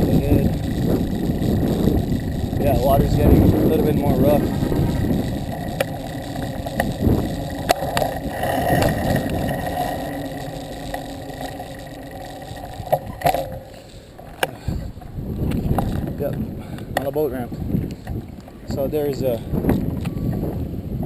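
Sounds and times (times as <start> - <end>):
sharp clicks and knocks: 0.0 - 14.6
wind and ride noise: 0.0 - 21.0.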